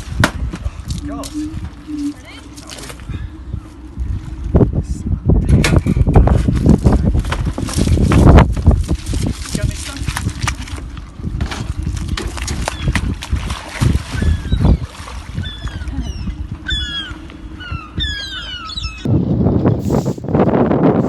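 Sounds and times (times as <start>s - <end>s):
wind on microphone: 0.0s - 21.0s
bird chirping: 15.4s - 19.1s.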